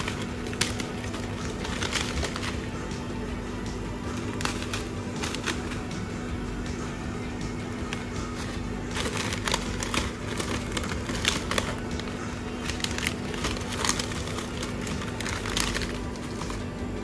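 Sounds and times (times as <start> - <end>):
crinkling and clicking: 0.0 - 2.8, 4.0 - 6.0, 7.6 - 17.0
background music: 0.0 - 17.0.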